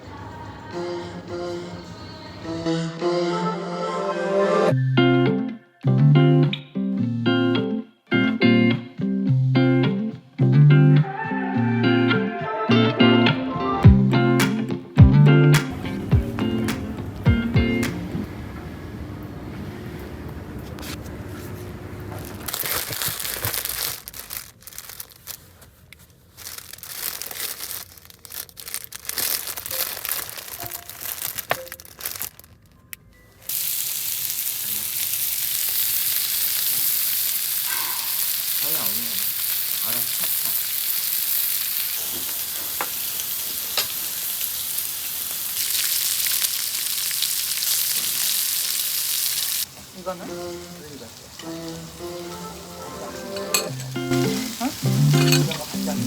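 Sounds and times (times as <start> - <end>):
food sizzling: 26.5 - 32.4, 33.4 - 56.0.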